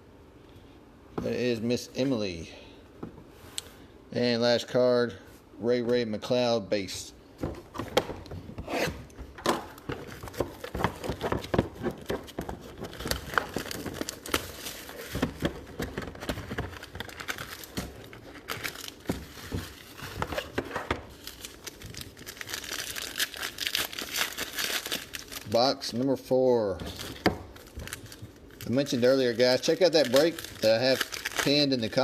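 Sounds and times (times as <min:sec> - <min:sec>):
plastic wrapping crinkling: 0:09.2 - 0:26.0, 0:26.7 - 0:32.0
cards and packaging clicking: 0:09.5 - 0:25.5, 0:26.9 - 0:32.0.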